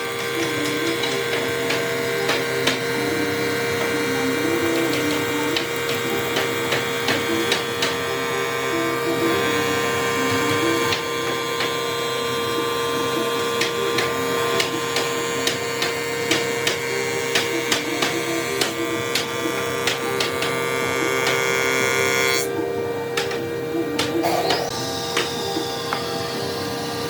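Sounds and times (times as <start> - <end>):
sharp clicks and knocks: 0.0 - 8.1
woodworking machine motor whine: 0.0 - 27.0.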